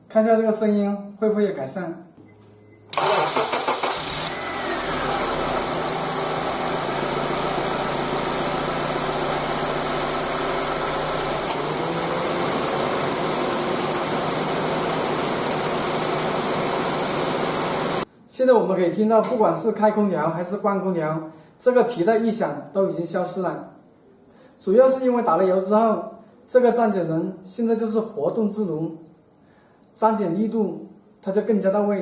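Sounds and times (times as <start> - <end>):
car engine cranking and idling: 3.0 - 18.0.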